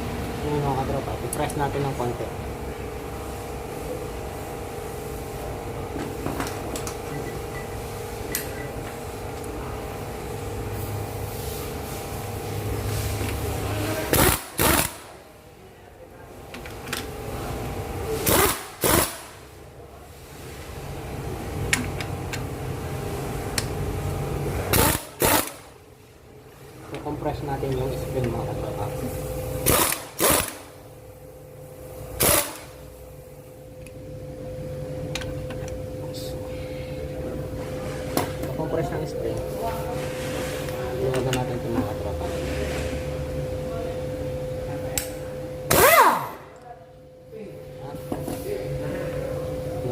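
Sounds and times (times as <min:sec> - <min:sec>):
steady hum: 0:00.0 - 0:49.9
impact wrench bursts: 0:14.1 - 0:15.2, 0:18.2 - 0:19.4, 0:24.7 - 0:25.7, 0:29.6 - 0:30.8, 0:32.2 - 0:32.8, 0:45.7 - 0:46.4.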